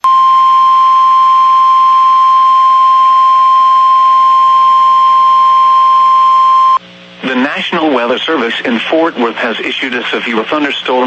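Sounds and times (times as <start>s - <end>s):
steady warning alarm tone: 0.0s - 6.8s.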